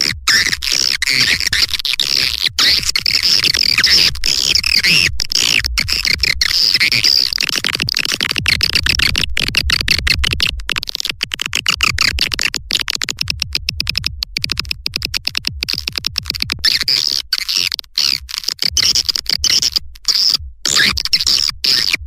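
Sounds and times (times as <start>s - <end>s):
low rumble: 20.4s - 20.7s.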